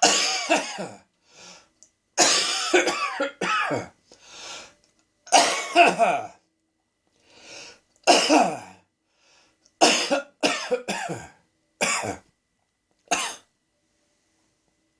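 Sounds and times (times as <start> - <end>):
man coughing: 0.0 - 1.0, 2.2 - 3.9, 5.3 - 6.4, 8.1 - 8.7, 9.8 - 12.2
man breathing in: 1.2 - 1.8, 4.1 - 4.8, 7.2 - 7.9, 9.0 - 9.6.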